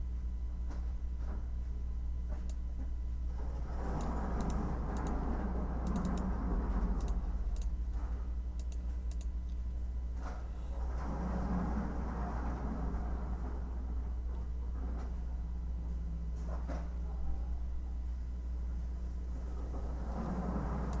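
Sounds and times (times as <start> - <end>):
keyboard typing: 5.9 - 6.3.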